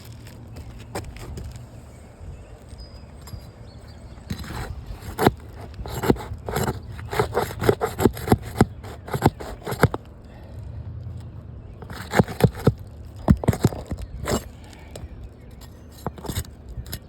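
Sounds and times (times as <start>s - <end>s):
shingles being pried up scraping: 4.2s - 10.1s, 11.8s - 17.0s.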